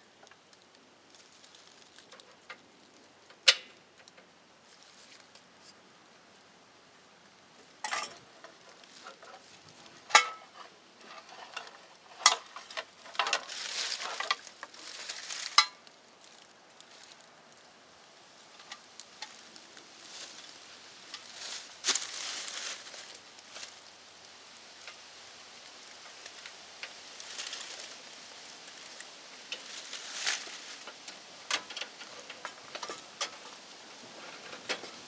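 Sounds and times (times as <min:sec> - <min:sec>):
rustling and scraping: 0:04.6 - 0:05.9, 0:07.6 - 0:17.4, 0:18.4 - 0:23.9, 0:24.8 - 0:35.0
clinks and knocks of hard objects: 0:07.8 - 0:09.4, 0:10.0 - 0:14.5.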